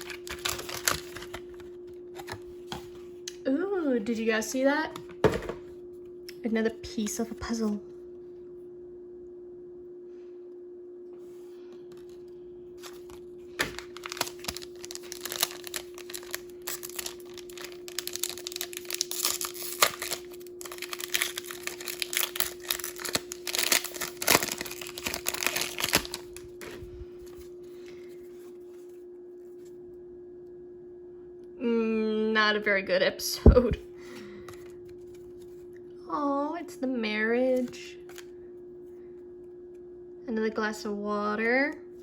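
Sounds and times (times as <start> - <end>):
packaging wrapper tearing and crumpling: 0.0 - 1.6, 12.8 - 26.8
faint steady hum: 0.0 - 42.0.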